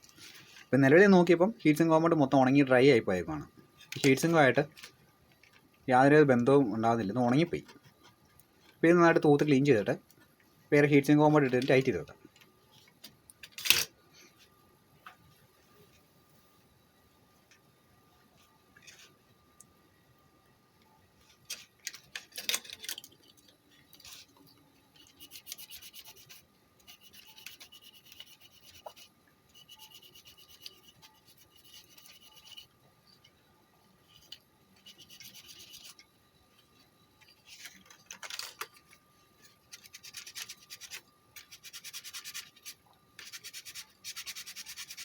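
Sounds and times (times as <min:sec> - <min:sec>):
rasping scrubbing on metal: 0:25.0 - 0:32.8, 0:34.1 - 0:36.0.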